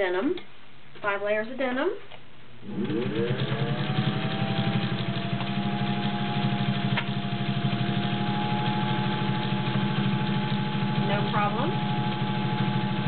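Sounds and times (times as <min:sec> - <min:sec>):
sewing machine stitching: 0:02.6 - 0:13.0.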